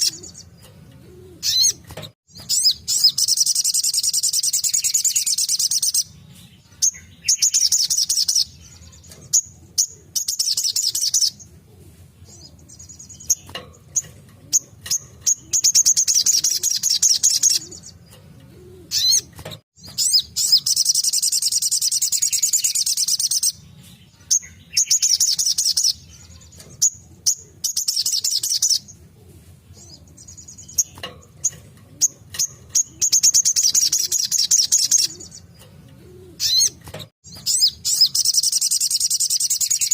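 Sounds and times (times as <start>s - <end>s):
bird singing fast trills: 0.0s - 0.6s, 1.3s - 11.5s, 12.3s - 18.2s, 18.9s - 29.0s, 29.8s - 39.9s.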